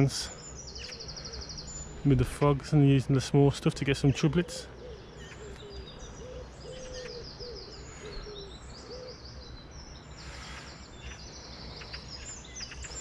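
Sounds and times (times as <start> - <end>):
songbirds trilling: 0.0 - 13.0
low cooing: 4.4 - 9.2.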